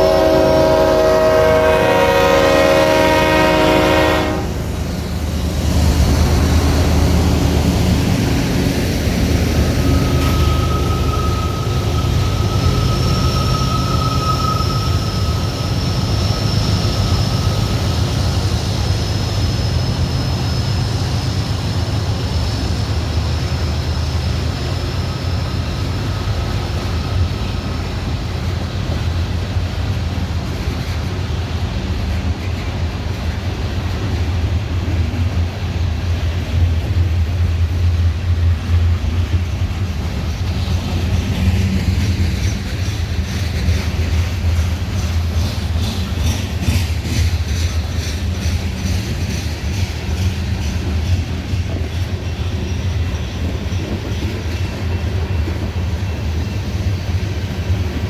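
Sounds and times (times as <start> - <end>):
freight train rumbling on rails: 0.0 - 58.0
thin high whine: 9.6 - 17.4.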